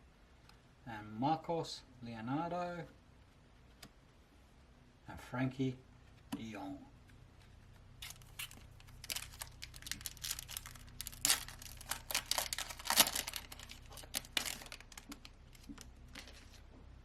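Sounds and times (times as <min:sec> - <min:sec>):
foil wrapper crinkling and tearing: 0:08.0 - 0:16.6.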